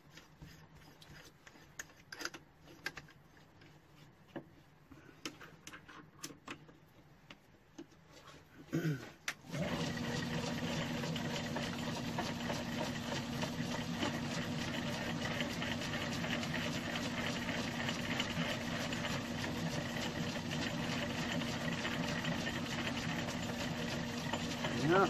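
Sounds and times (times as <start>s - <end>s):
lathe motor hum: 9.5s - 25.0s
mill cutting steel chatter: 21.6s - 25.0s.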